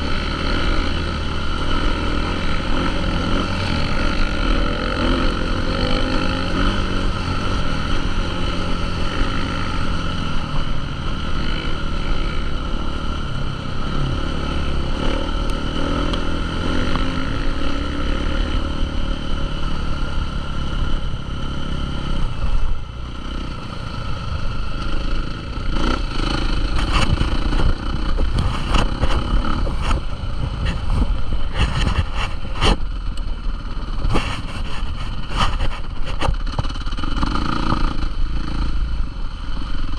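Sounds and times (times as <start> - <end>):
motorcycle engines revving: 0.0 - 39.9.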